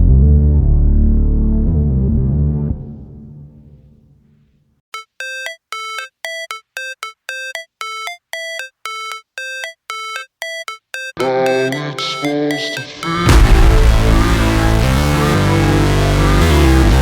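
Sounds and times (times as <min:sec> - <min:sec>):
synthesizer bell-like notes: 0:05.0 - 0:13.8.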